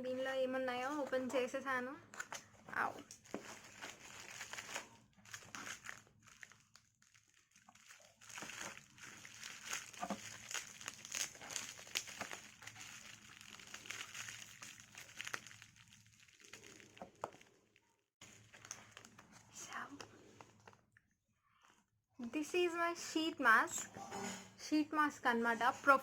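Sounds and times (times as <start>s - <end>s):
packaging crinkling and rustling: 2.1s - 20.8s.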